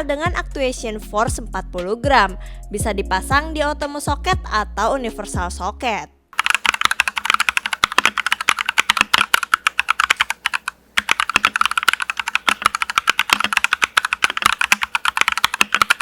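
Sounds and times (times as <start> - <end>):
fast typing on mechanical keyboard: 6.4 - 16.0.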